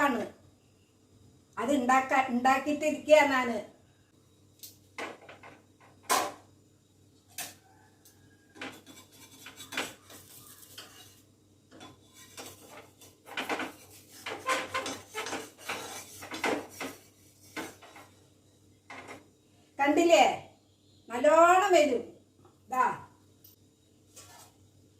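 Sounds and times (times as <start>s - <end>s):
metal pans clinking and scraping: 8.6s - 18.2s.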